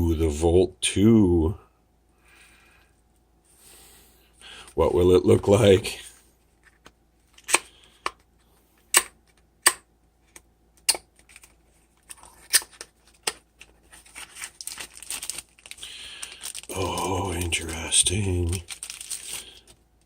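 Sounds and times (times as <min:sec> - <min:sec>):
packaging rustling and crinkling: 0:11.2 - 0:19.8.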